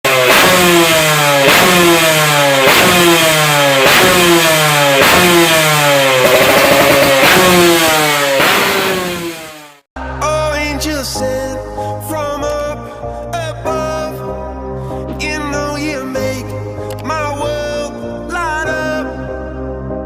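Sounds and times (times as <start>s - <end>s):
motorcycle engine revving: 0.0s - 9.9s
music: 10.0s - 20.0s.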